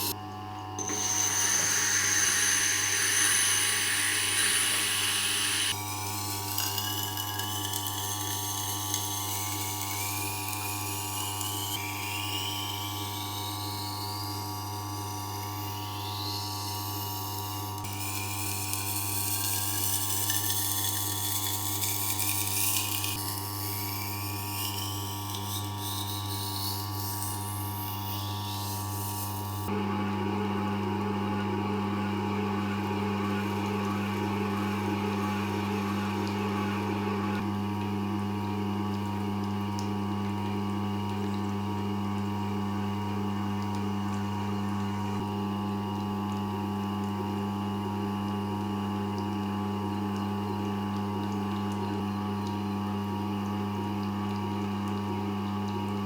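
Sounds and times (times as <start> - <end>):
knife blade grinding hiss: 0.8 - 29.7
knife-sharpening grinder humming: 0.8 - 29.7.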